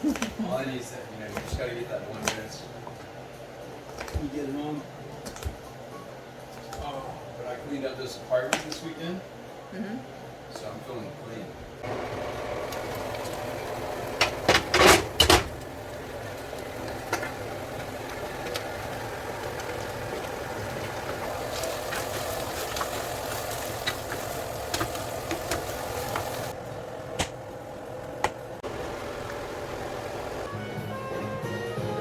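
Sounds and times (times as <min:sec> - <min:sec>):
whirring hum: 0:11.4 - 0:30.5
loud clatters and knocks: 0:11.8 - 0:26.5.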